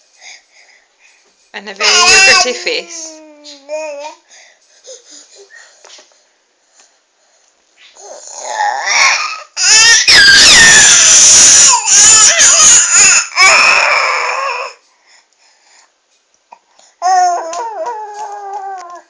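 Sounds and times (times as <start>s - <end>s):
child crying vocalising: 8.0s - 14.8s, 17.0s - 19.0s.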